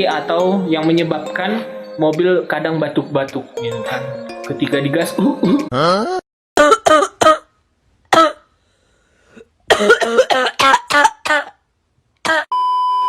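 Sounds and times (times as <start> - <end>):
person imitating engine coughing: 5.2 - 7.5, 9.7 - 11.6, 12.3 - 12.5.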